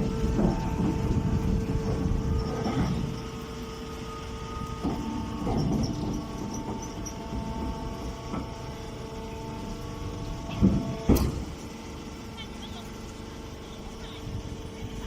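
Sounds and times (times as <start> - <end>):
baler machine hum: 0.0 - 15.0
machine knocks: 10.5 - 11.5.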